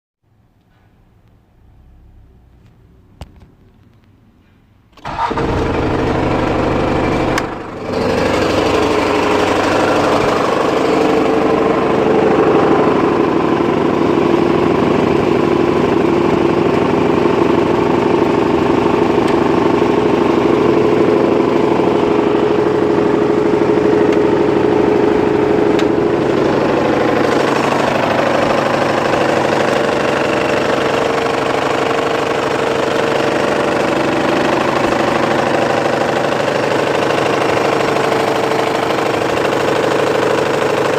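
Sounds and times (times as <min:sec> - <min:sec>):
diesel engine idling with knock: 0:05.0 - 0:40.9.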